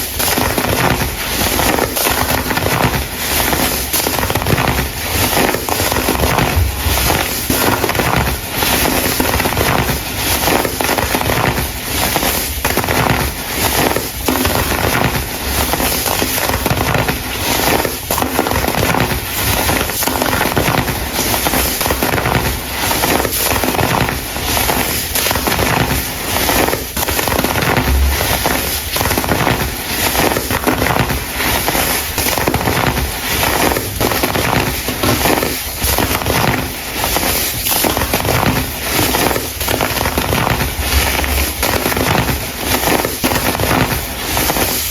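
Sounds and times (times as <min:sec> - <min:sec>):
crunchy crumbling crackle: 0:00.0 - 0:44.9.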